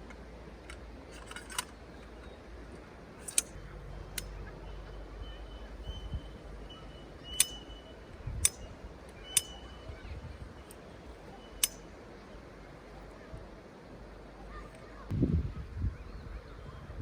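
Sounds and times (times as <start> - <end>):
sharp clicks: 7.2 - 7.8, 11.6 - 11.8.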